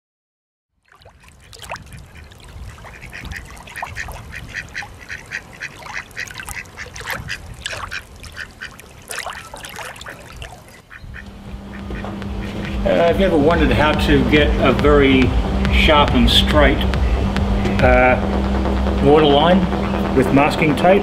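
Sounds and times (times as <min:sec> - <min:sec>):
ducks quacking: 0:01.1 - 0:18.4, 0:19.0 - 0:21.0
low rumble: 0:11.0 - 0:21.0.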